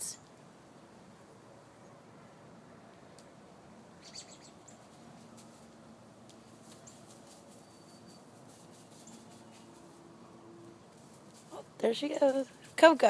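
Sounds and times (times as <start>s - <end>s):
small birds chirping: 4.0s - 5.1s, 6.3s - 9.9s.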